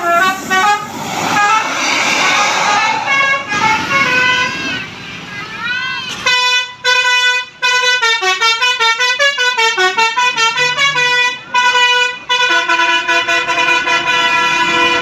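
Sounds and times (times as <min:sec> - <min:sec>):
bus horn playing a tune: 0:00.0 - 0:01.6, 0:06.2 - 0:15.0.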